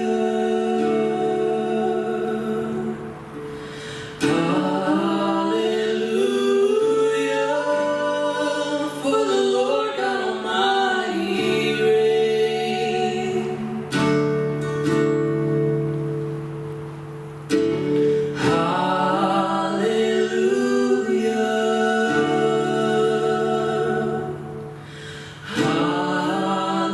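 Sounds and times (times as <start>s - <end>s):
acoustic guitar strums: 0.0s - 6.0s, 10.0s - 26.9s
person singing: 0.0s - 16.0s, 17.7s - 26.9s.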